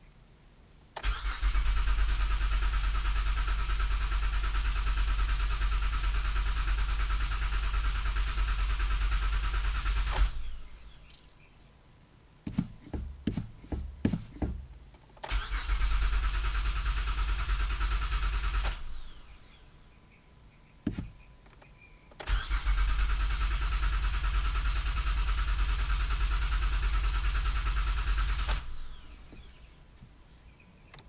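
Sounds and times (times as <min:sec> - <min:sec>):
car starter cranking: 0:01.0 - 0:11.1, 0:14.4 - 0:19.5, 0:22.2 - 0:29.5.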